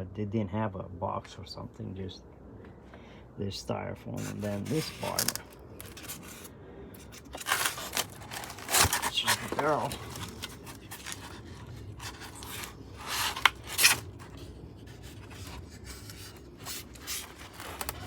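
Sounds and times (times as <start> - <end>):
rifle parts scraping on styrofoam: 4.2 - 18.0.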